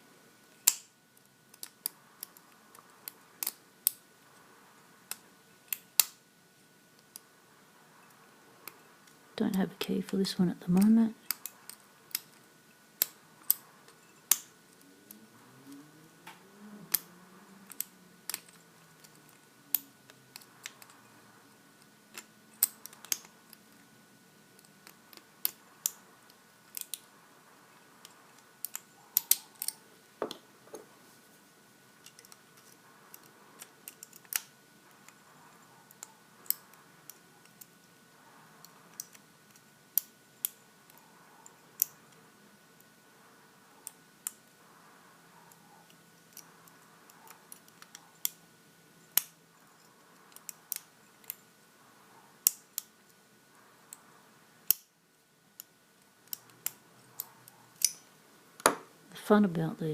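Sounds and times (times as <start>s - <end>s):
lock pick metallic clicks: 0.6s - 0.9s, 10.8s - 12.4s, 22.1s - 23.6s, 26.7s - 27.1s, 28.0s - 30.4s, 32.0s - 35.2s, 54.7s - 54.9s, 55.6s - 58.8s.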